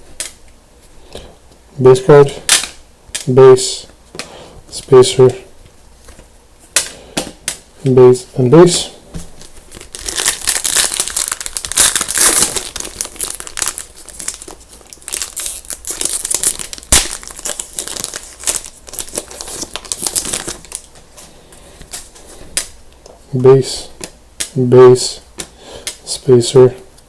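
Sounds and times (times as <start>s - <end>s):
wrapper tearing and crinkling: 9.4s - 21.0s.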